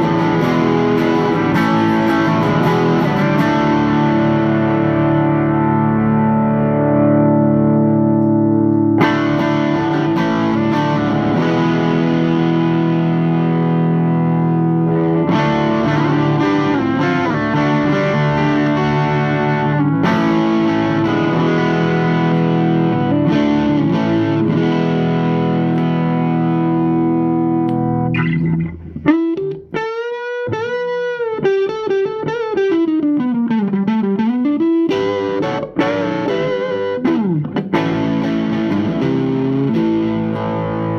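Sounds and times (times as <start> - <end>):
distorted electric guitar chords: 0.0 - 40.9
electric guitar lead with bends: 0.0 - 40.9.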